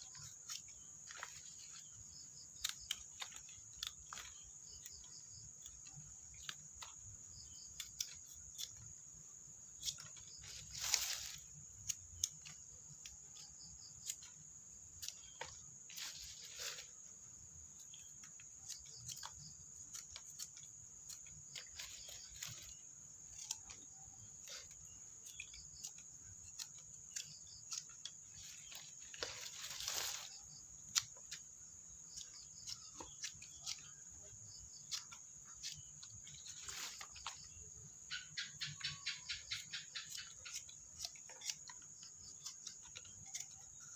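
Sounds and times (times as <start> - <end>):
rustling: 0.0 - 7.0, 9.8 - 12.6, 15.0 - 31.5, 32.2 - 37.6
crickets chirring: 0.0 - 43.9.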